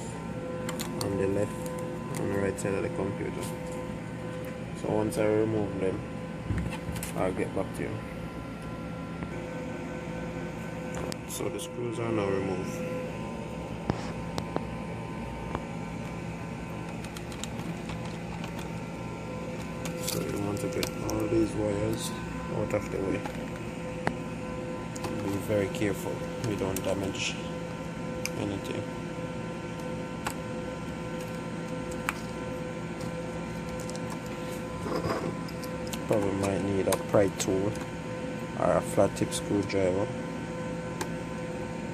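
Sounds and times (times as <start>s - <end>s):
steady background hum: 0.0s - 41.9s
laptop parts clicking: 16.8s - 18.8s.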